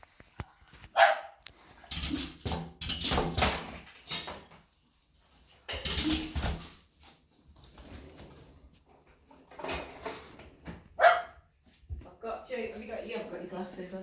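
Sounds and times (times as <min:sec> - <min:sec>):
dog yelping: 0:11.0 - 0:11.4.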